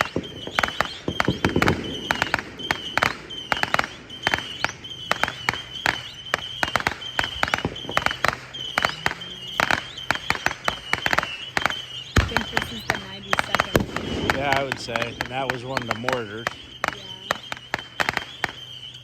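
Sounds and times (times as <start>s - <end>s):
fireworks cracking and popping: 0.0s - 19.0s.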